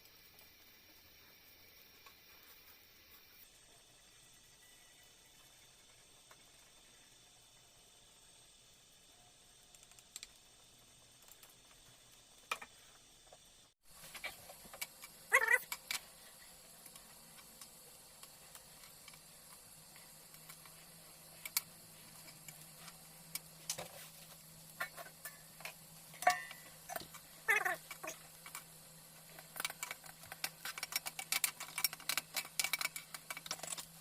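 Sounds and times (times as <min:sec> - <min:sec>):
steady low hum: 0:00.0 - 0:34.0
coconut crackling while toasting: 0:08.2 - 0:34.0.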